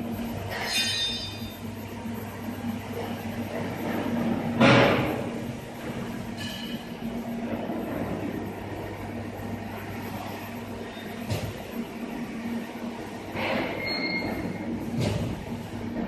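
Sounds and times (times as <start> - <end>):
brief high squeal: 13.8 - 14.4.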